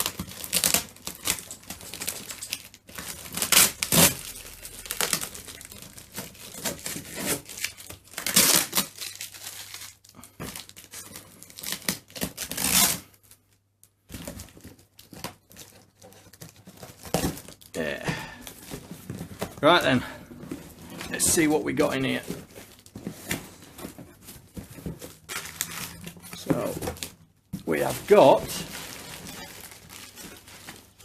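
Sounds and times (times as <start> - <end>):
tape tearing: 0.0 - 13.2, 20.4 - 31.0
packaging crinkling and rustling: 0.0 - 31.0.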